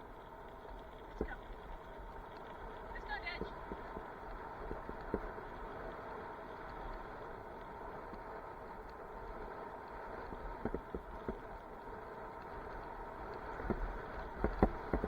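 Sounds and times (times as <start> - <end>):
bicycle tyre and wind rumble: 0.0 - 15.0
bicycle knocks and rattles: 13.6 - 15.0.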